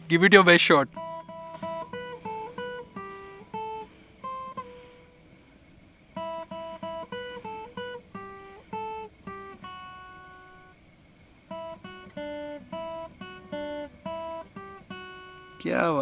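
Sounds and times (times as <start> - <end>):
guitar strumming chords: 0.9 - 5.0, 6.2 - 10.6, 11.5 - 15.7.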